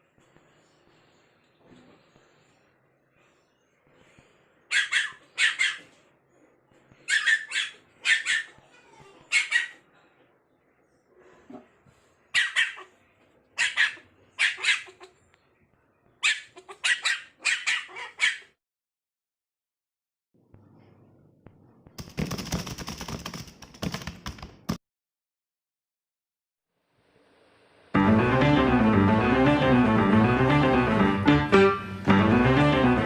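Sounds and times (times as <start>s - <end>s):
puppy barking: 4.7s - 6.0s, 7.0s - 8.6s, 9.3s - 9.8s, 12.3s - 13.0s, 13.6s - 15.1s, 16.2s - 18.6s.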